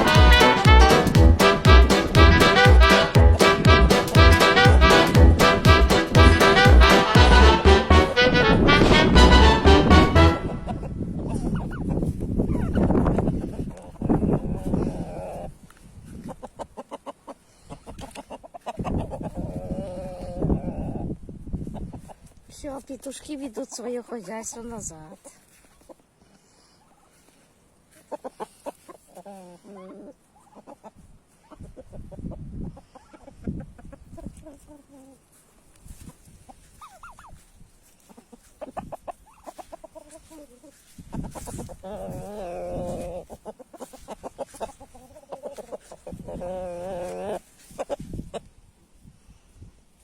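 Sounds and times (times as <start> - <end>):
chickens clucking: 9.8 - 48.7.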